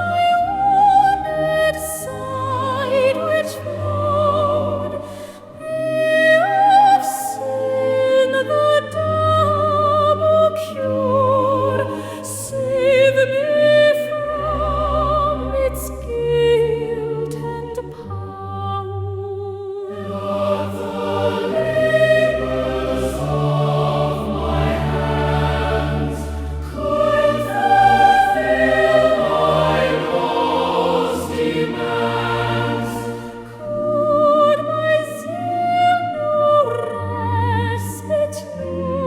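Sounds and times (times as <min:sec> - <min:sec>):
choir singing a hymn: 0:00.0 - 0:19.0, 0:19.7 - 0:39.0
sustained low accompaniment: 0:19.9 - 0:35.6.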